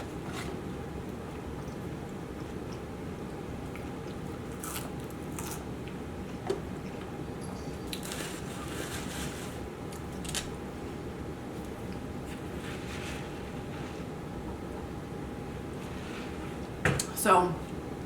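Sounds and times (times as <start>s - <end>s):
person chewing crunchy food: 0.0s - 10.5s
low steady hum: 0.0s - 18.0s.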